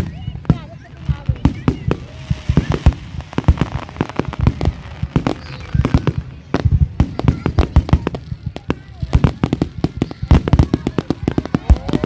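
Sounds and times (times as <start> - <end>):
fireworks bangs and cracks: 0.0 - 12.0.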